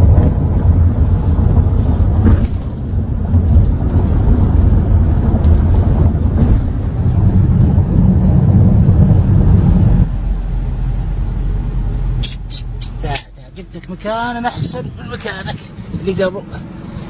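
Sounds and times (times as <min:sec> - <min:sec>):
car road and wind rumble: 0:00.0 - 0:17.0.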